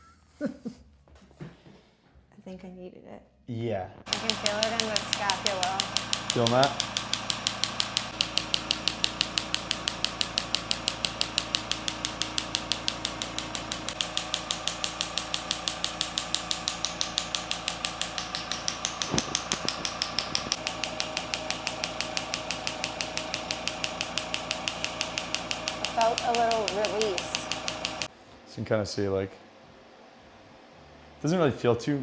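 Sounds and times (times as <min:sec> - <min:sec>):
percussion massager pulsing: 0:04.1 - 0:28.1.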